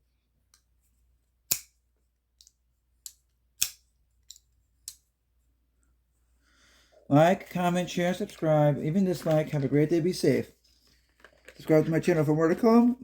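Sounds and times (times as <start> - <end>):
folding knife clicking: 1.5 - 1.8, 2.4 - 5.0.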